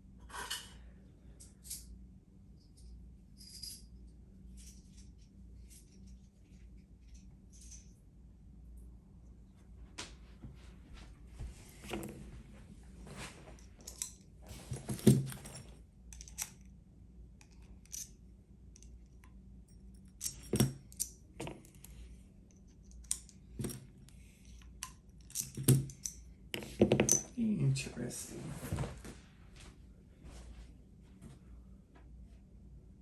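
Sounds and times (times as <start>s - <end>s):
metal clicks of padlock and tools: 13.8s - 14.3s, 16.1s - 16.7s, 17.4s - 19.3s, 20.1s - 21.9s, 22.8s - 23.8s, 24.5s - 26.2s.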